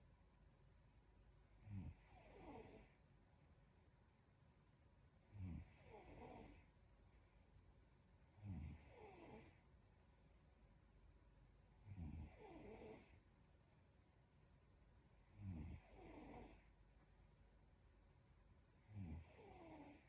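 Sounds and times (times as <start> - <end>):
woman snoring: 1.6 - 3.0, 5.3 - 6.7, 8.4 - 9.6, 11.8 - 13.2, 15.3 - 16.7, 18.8 - 20.0.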